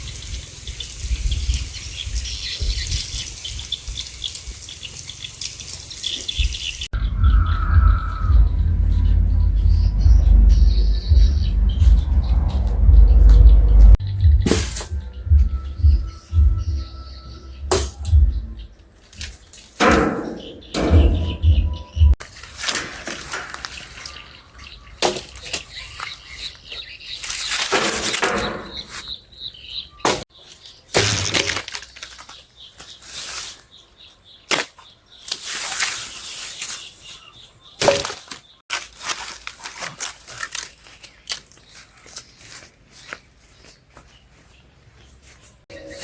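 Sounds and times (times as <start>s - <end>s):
rustling in vegetation: 0.0s - 7.0s, 22.2s - 29.3s, 30.4s - 46.0s
sharp knocks: 13.3s - 15.5s, 19.8s - 22.2s.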